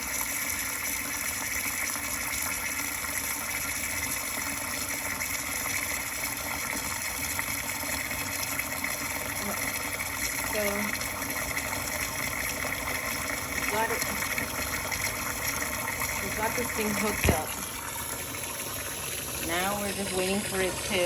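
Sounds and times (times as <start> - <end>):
kitchen tap running: 0.0 - 21.0.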